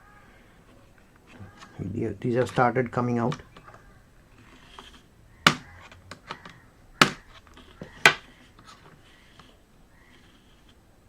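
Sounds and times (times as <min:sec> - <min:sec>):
sharp plastic clicks: 0:04.7 - 0:08.3.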